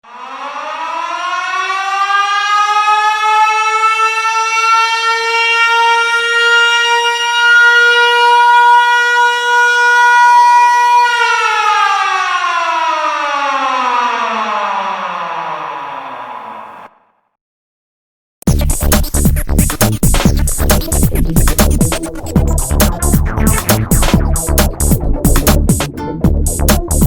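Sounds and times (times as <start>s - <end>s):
siren wailing: 0.0s - 17.2s, 22.2s - 24.9s.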